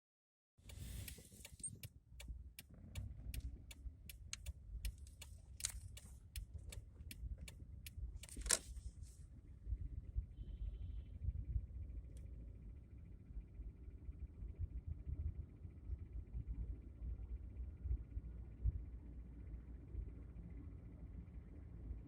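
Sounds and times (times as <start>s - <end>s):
engine knocking clicks: 0.6s - 8.6s
car rumble: 0.6s - 22.0s.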